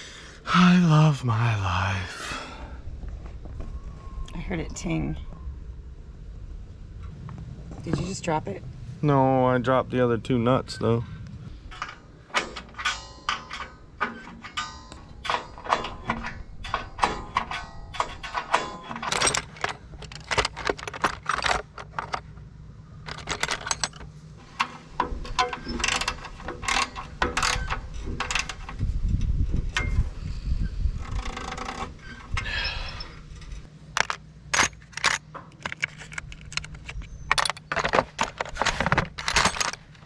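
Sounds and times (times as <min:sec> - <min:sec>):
low steady hum: 0:00.0 - 0:40.0
wrench clinking on bolts: 0:11.7 - 0:22.2, 0:23.0 - 0:28.8.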